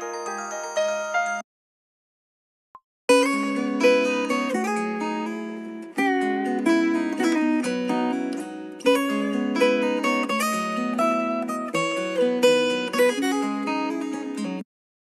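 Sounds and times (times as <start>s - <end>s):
plucked guitar-like ringtone melody: 3.1s - 14.6s.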